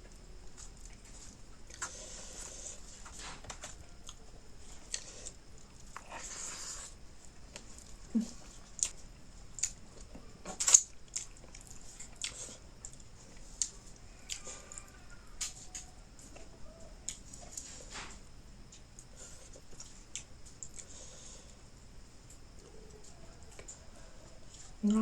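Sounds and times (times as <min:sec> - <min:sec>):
person chewing and biting: 0:04.8 - 0:07.0, 0:08.6 - 0:14.5.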